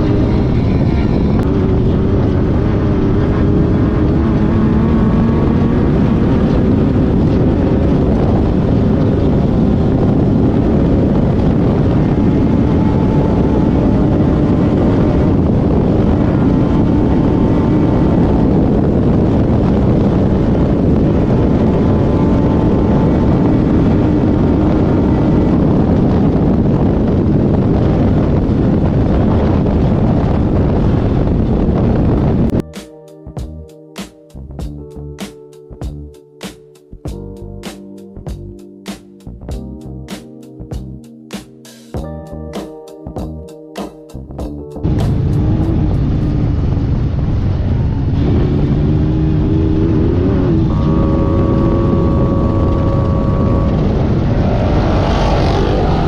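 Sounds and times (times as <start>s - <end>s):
race car engine revving: 0.0s - 26.8s, 44.8s - 56.0s
wind noise: 0.0s - 36.1s, 37.0s - 56.0s.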